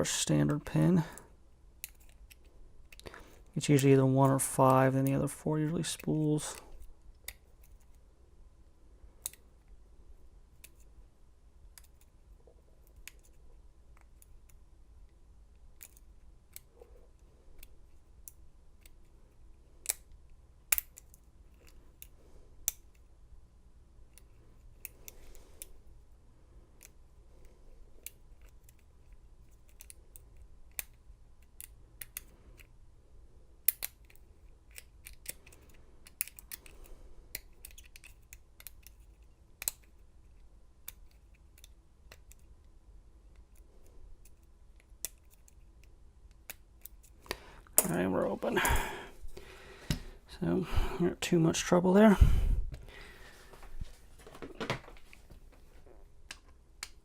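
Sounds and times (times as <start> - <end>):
lock pick metallic clicks: 1.8 - 3.1, 19.8 - 23.0, 33.6 - 40.0.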